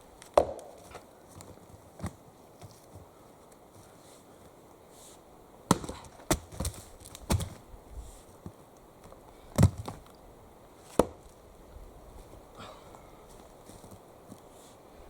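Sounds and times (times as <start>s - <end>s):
axe chopping wood: 0.3s - 1.0s, 5.7s - 7.6s, 9.6s - 10.0s, 10.9s - 11.2s.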